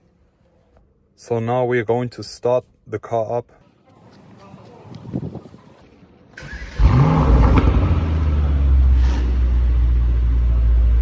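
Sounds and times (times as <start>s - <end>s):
starter motor whirr: 6.4s - 7.9s
car engine revving and idling: 6.4s - 11.0s.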